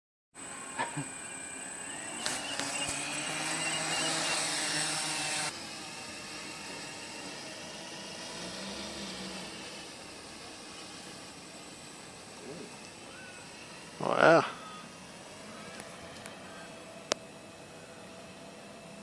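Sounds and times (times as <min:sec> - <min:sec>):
faint steady hum: 0:00.4 - 0:19.0
quadcopter propellers whirring: 0:00.4 - 0:19.0.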